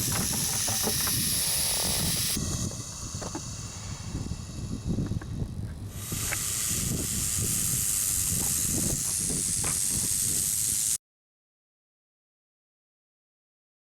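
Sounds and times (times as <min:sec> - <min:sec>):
snake hissing: 0:00.0 - 0:11.0
wind rumble on microphone: 0:00.0 - 0:11.0.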